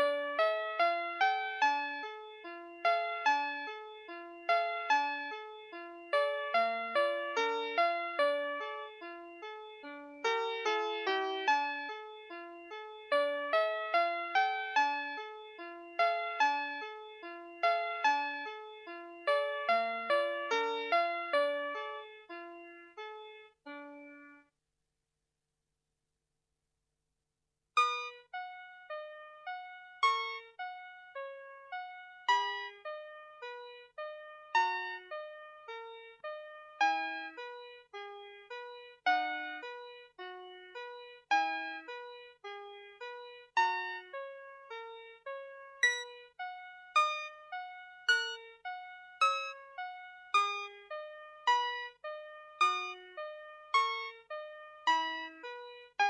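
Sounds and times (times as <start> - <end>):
toy playing electronic tune: 45.8 - 52.0, 52.6 - 55.6.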